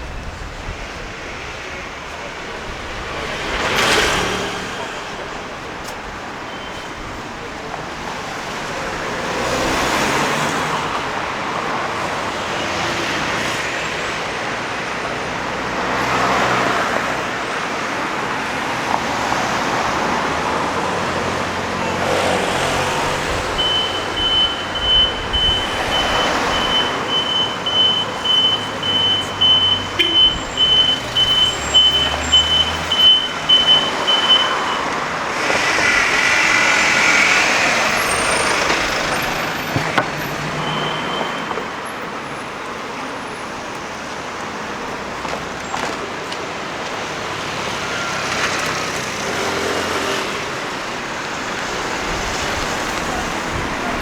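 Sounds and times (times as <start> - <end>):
cars passing: 0.0 - 54.0
high electronic beep: 23.6 - 34.9.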